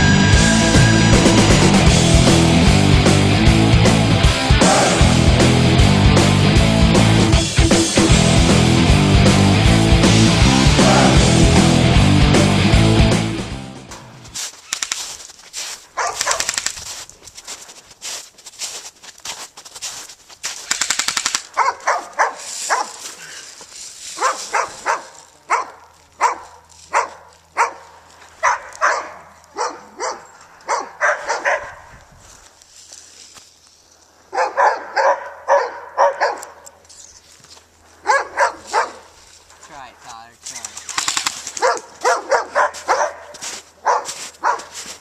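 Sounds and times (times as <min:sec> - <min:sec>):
dog barking: 0:16.0 - 0:16.5, 0:21.6 - 0:23.0, 0:24.2 - 0:31.9, 0:34.3 - 0:36.6, 0:38.0 - 0:39.1, 0:41.5 - 0:45.0
airsoft gunfire: 0:16.2 - 0:16.8, 0:20.7 - 0:21.6, 0:40.8 - 0:41.7.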